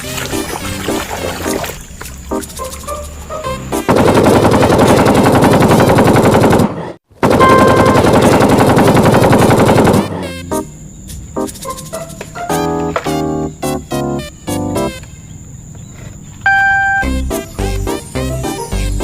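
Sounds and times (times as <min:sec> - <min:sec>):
machine-gun fire bursts: 0:03.9 - 0:10.2.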